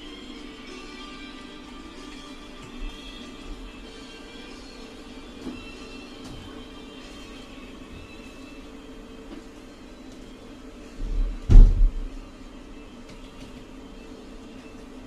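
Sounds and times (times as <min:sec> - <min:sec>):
low electrical fan hum: 0:00.0 - 0:15.0
dull thump: 0:11.2 - 0:12.2.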